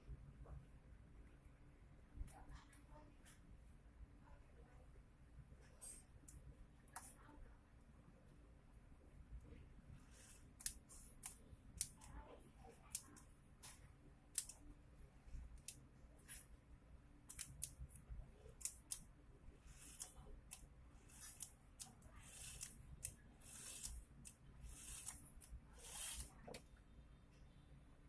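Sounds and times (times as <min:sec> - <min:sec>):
small parts clicking and scraping: 0:19.6 - 0:26.6.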